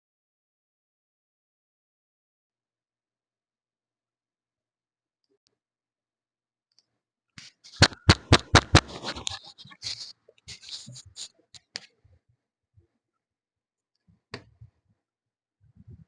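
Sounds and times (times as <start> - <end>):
microphone handling clicks and knocks: 7.7 - 9.4.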